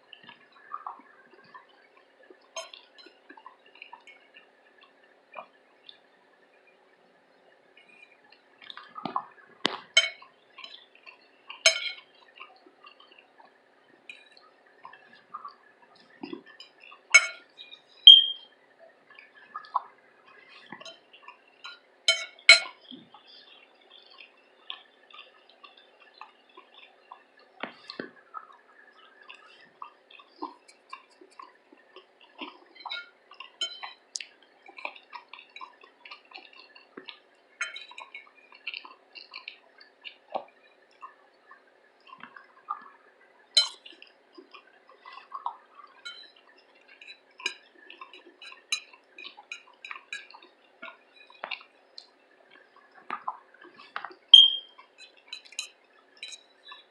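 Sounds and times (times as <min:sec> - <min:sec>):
high clink: 0:11.7 - 0:12.0, 0:17.2 - 0:17.4, 0:22.1 - 0:22.7, 0:43.6 - 0:43.8, 0:55.4 - 0:56.4
utensil clicking on dish: 0:11.7 - 0:12.0, 0:16.6 - 0:17.4, 0:21.6 - 0:22.8, 0:37.6 - 0:38.3, 0:43.6 - 0:43.8, 0:46.9 - 0:51.6, 0:54.4 - 0:56.4
wet chewing: 0:19.2 - 0:41.2, 0:43.6 - 0:56.9.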